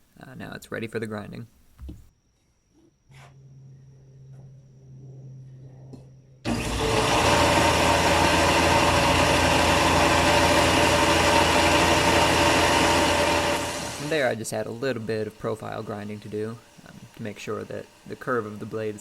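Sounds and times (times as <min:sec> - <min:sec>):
faint low hum: 0:00.0 - 0:06.5
grinder grinding steel: 0:06.5 - 0:19.0.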